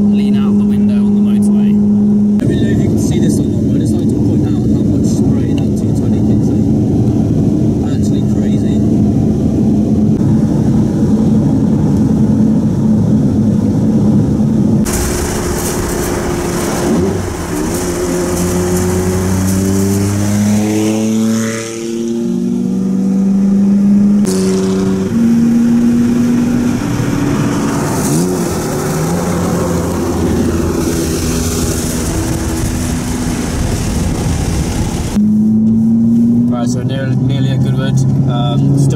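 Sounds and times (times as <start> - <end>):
car engine: 0.0 - 38.9
steady tones jumping in pitch: 6.6 - 33.6
tyres hissing on wet road: 14.9 - 19.8, 28.1 - 35.1.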